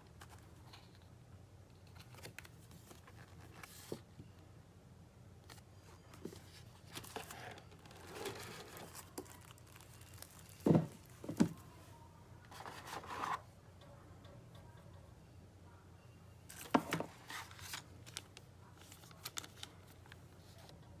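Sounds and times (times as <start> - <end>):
plastic packaging crinkling: 6.9 - 11.5, 16.5 - 20.2.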